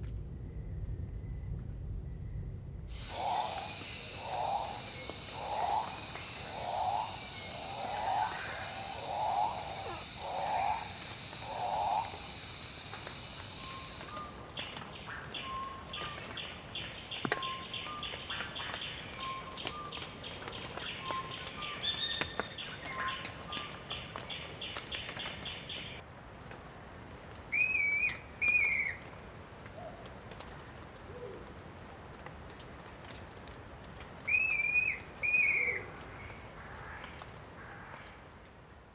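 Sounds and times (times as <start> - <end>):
high-pitched insect drone: 2.9 - 14.7
fast pulsing chorus of calls: 2.9 - 15.4
loud whistled bird calls: 2.9 - 16.2.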